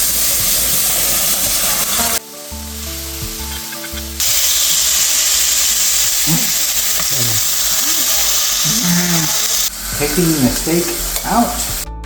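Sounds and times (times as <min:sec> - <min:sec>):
meat sizzling in a frying pan: 0:00.0 - 0:11.9
held musical notes: 0:01.6 - 0:12.0.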